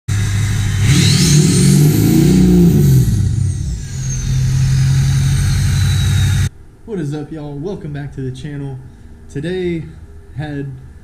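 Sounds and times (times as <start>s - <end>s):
diesel engine revving: 0.0s - 6.5s
high turbo whistle: 0.1s - 6.5s.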